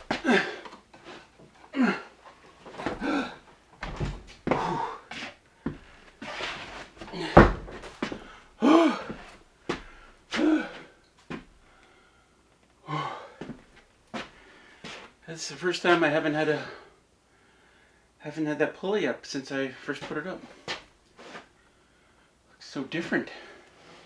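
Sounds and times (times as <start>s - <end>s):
man grunting and breathing: 0.1s - 0.8s, 1.7s - 2.2s, 2.8s - 3.5s, 4.4s - 5.8s, 7.0s - 11.0s, 12.8s - 13.6s
heavy thunks and knocks: 7.0s - 8.3s.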